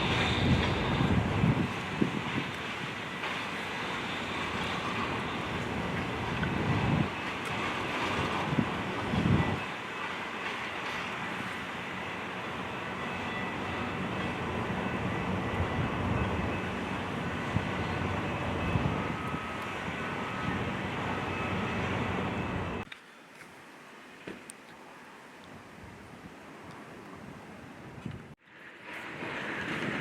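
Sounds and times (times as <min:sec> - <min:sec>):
train rumbling on rails: 0:00.0 - 0:22.9, 0:28.4 - 0:30.0
high ringing tones: 0:09.2 - 0:22.8.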